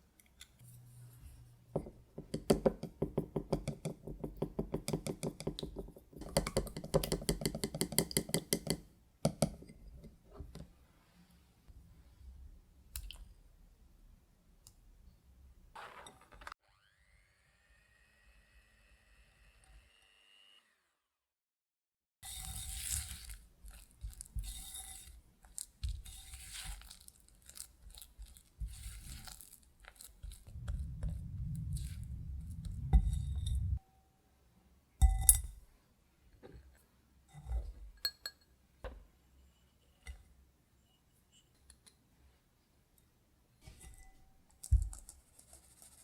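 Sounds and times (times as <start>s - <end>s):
utensils scraping a glass bowl: 22.2s - 23.4s, 24.1s - 25.2s, 26.0s - 27.0s
low rumbling: 30.3s - 33.8s.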